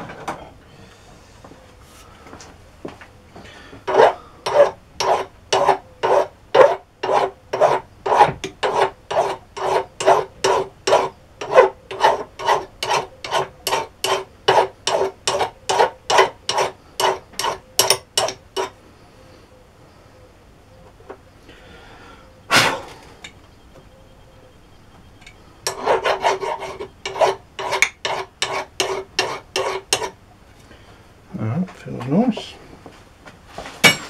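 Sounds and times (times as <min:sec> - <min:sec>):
sharpening stone rasping on metal: 0:03.9 - 0:18.8, 0:25.7 - 0:30.2.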